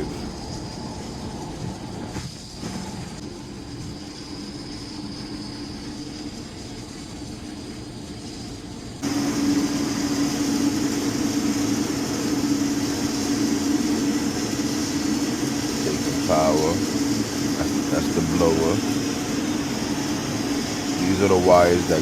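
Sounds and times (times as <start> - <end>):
oil burner blower motor humming: 0.0 - 22.0.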